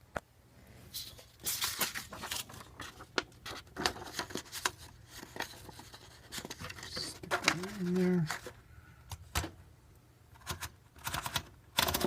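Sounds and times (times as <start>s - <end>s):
paper rustling and scraping: 0.9s - 8.6s
typewriter clicks: 10.4s - 12.0s.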